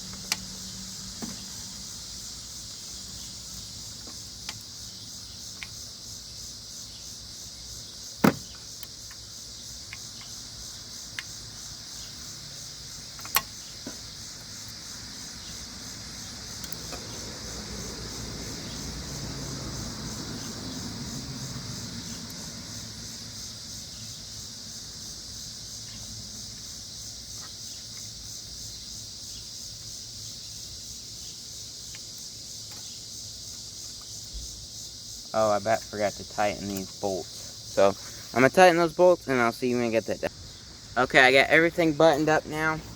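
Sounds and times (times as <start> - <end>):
crickets chirring: 0.0 - 42.9
vehicle passing rumble: 15.0 - 23.8, 39.4 - 42.9.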